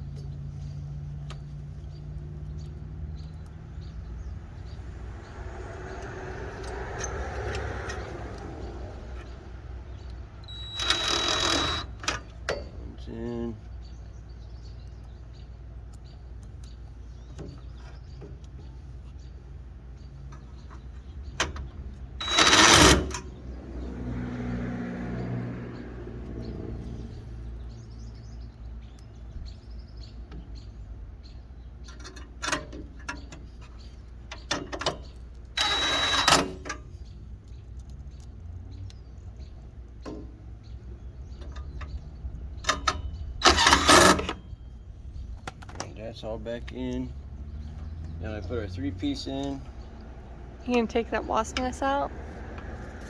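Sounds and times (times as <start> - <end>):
passing vehicle hum: 0.0 - 12.2, 18.5 - 28.8, 35.2 - 53.0.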